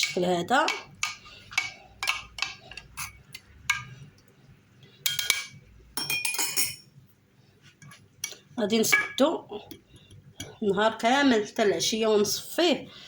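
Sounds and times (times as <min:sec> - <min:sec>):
glass bottle clinking: 0:06.0 - 0:06.8.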